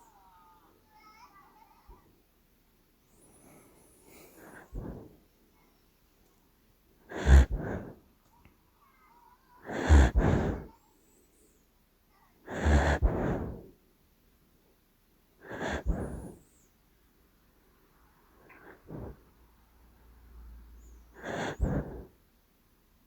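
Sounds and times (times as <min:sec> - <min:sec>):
puppy snoring: 0:07.1 - 0:08.0, 0:09.6 - 0:10.7, 0:12.5 - 0:13.8, 0:15.4 - 0:16.5, 0:18.5 - 0:19.3, 0:21.2 - 0:22.2.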